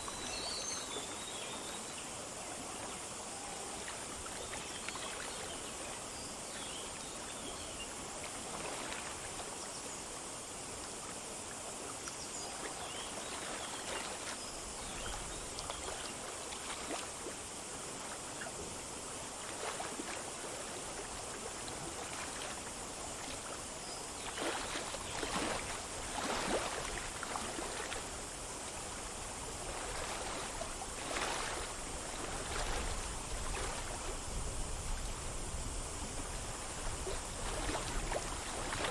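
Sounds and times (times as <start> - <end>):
stream babbling over stones: 8.0 - 38.9
water splashing and gurgling: 8.2 - 9.6, 12.6 - 38.9.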